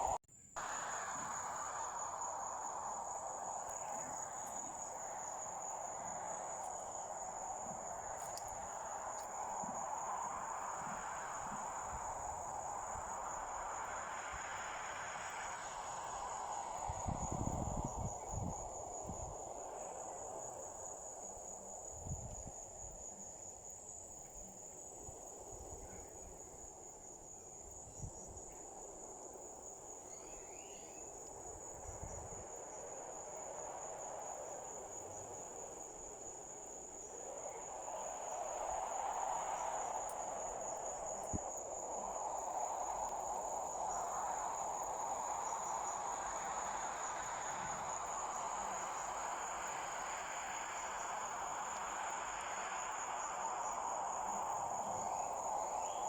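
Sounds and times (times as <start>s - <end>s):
rushing noise: 0.0s - 20.0s
crickets chirring: 0.0s - 56.0s.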